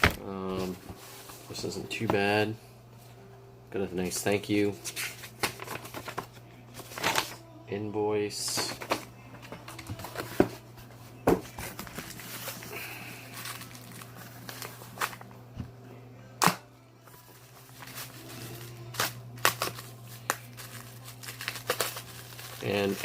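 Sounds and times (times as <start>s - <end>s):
paper and packaging rustling: 4.0s - 7.4s, 8.4s - 15.3s, 17.0s - 23.0s.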